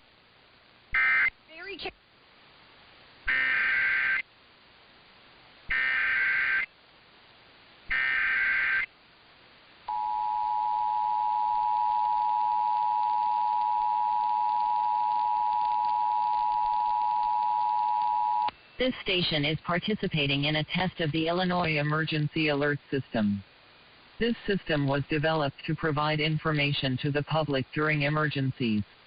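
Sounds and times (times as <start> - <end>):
warbling data tones: 9.9 - 18.5.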